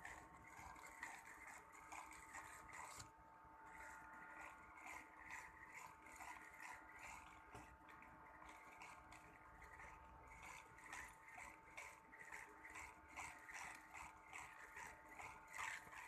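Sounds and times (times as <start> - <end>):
faint gear grinding: 0.0 - 16.0
fishing reel cranking: 9.7 - 16.0.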